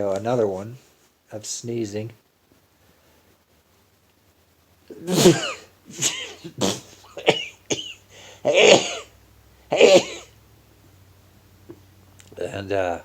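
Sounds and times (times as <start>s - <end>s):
man sneezing: 4.9s - 9.1s, 9.7s - 10.3s.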